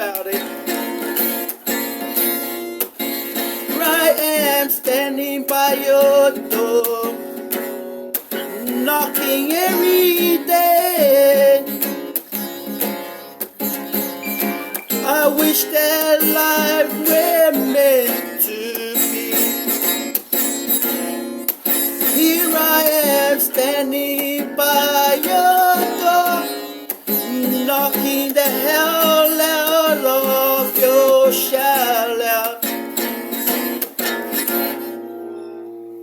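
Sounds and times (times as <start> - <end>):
person singing: 0.0 - 1.1, 3.6 - 7.4, 8.4 - 12.0, 14.2 - 20.1, 21.9 - 32.8
acoustic guitar playing: 0.0 - 36.0.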